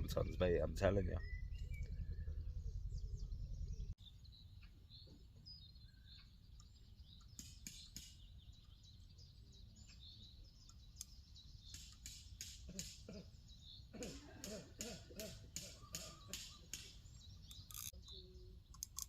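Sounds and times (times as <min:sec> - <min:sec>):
low rumble: 0:00.0 - 0:04.4
small birds chirping and twittering: 0:00.0 - 0:19.0
sharp clicks: 0:06.6 - 0:08.7, 0:10.7 - 0:13.1, 0:14.4 - 0:19.0.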